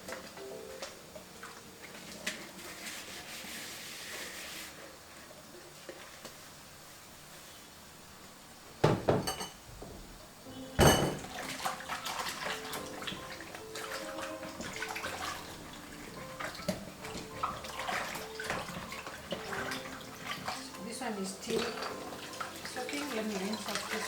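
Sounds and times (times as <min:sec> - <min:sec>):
dishes and cutlery clinking: 0:08.8 - 0:09.6, 0:10.8 - 0:11.9
metal dishware clanking: 0:08.9 - 0:09.6, 0:10.8 - 0:11.4
water splashing and pouring: 0:11.1 - 0:24.0.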